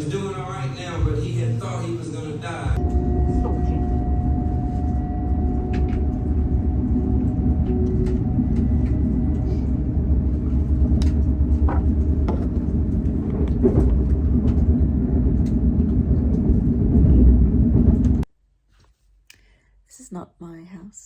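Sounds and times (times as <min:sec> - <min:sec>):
vehicle rumbling: 0:00.0 - 0:18.2.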